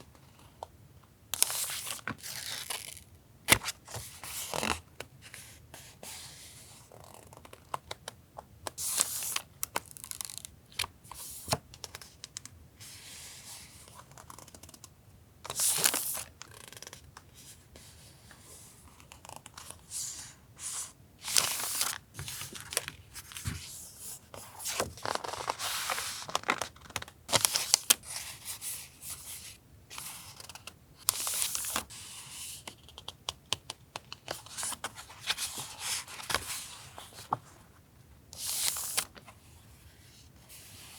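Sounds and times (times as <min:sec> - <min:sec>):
paper rustling and crinkling: 0:21.2 - 0:28.4.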